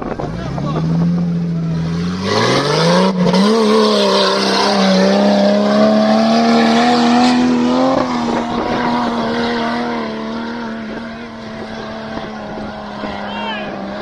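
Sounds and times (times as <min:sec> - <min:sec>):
engine revving high: 0:00.0 - 0:14.0.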